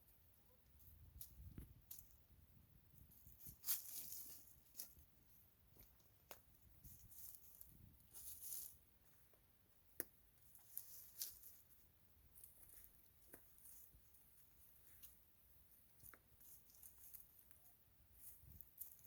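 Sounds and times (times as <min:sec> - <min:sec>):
chickens scratching in soil: 0:03.0 - 0:06.0, 0:06.7 - 0:09.1, 0:10.4 - 0:19.0.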